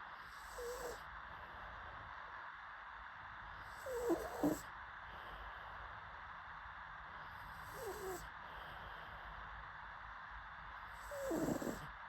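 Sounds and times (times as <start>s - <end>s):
dog snoring: 0.2s - 1.1s, 3.6s - 4.7s, 7.4s - 8.3s, 10.9s - 11.9s.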